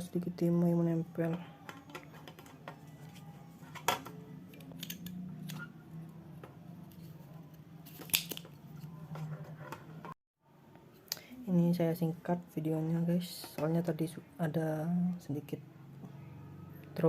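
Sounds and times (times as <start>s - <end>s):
small tools clicking and scraping: 1.6s - 5.7s.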